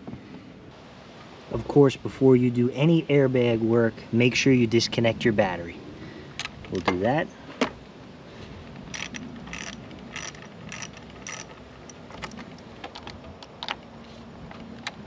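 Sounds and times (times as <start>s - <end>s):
ratchet wrench clicking: 8.9s - 12.4s.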